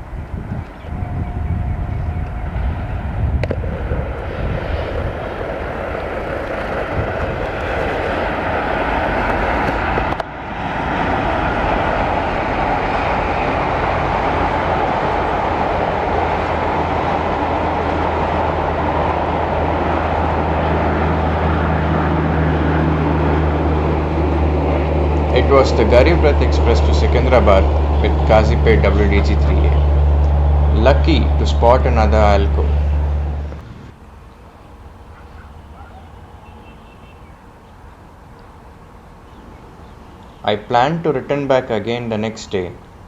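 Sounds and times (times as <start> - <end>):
diesel locomotive running: 0.0 - 43.0
low engine drone: 11.1 - 39.0.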